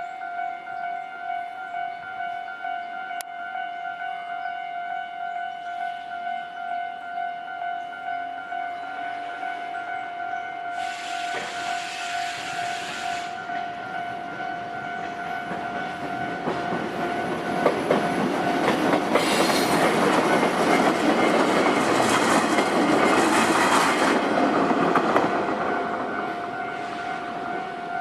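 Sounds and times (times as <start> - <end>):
level-crossing alarm bell ringing: 0.0 - 19.2, 25.2 - 28.0
train rumble: 10.7 - 28.0.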